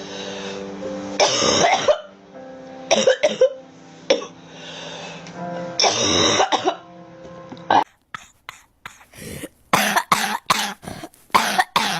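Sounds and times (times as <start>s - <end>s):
girl coughing: 7.7s - 11.9s.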